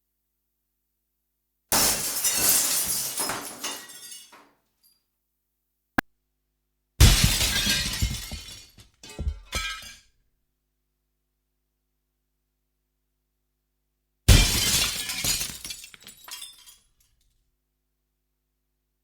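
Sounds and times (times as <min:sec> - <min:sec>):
glass shattering: 0:01.8 - 0:04.4.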